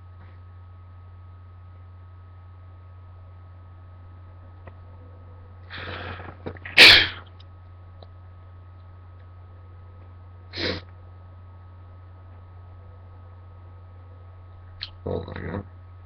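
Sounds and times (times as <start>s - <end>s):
person drawing in breath: 5.7s - 6.4s
short burst of breath: 5.7s - 7.2s
person sneezing: 5.7s - 7.3s, 10.5s - 10.9s.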